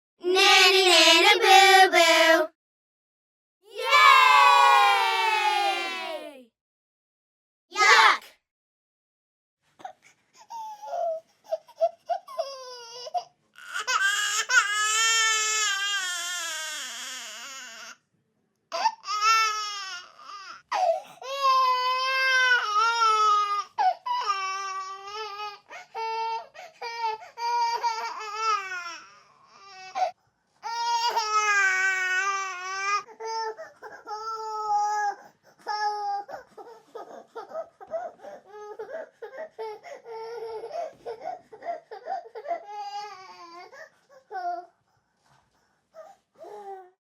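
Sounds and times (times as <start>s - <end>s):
child wailing: 3.7s - 6.4s.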